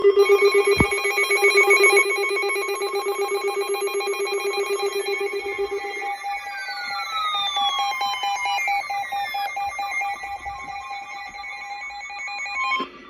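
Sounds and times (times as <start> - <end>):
pulsing low alarm tone: 0.0 - 12.7
warbling higher tones: 0.2 - 6.6
tones gliding downward: 0.2 - 8.2.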